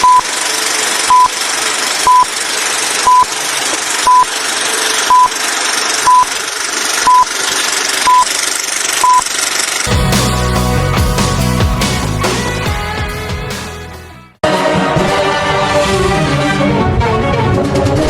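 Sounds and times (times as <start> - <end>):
high electronic beeps: 0.0 - 0.3, 1.1 - 1.3, 2.1 - 2.3, 3.0 - 3.3, 4.1 - 4.3, 5.1 - 5.3, 6.0 - 6.3, 7.0 - 7.3, 8.0 - 8.3.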